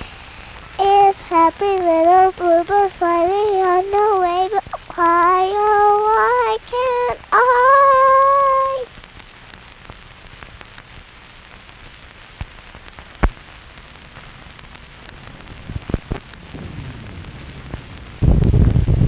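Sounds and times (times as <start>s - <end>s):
low crackling rumbles: 0.0s - 19.0s
steady hiss: 0.0s - 19.0s
child singing a held note: 0.8s - 8.9s.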